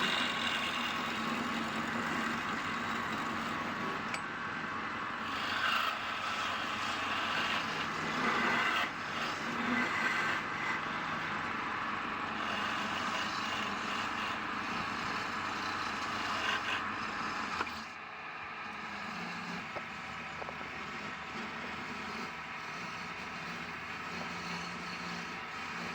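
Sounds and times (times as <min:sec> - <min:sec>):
wood lathe tool hissing: 0:00.0 - 0:18.0, 0:18.6 - 0:25.9.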